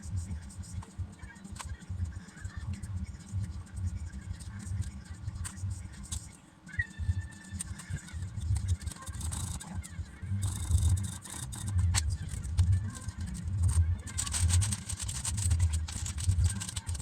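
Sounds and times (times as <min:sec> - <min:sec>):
keycaps clicking on keyboard: 0:10.4 - 0:17.0.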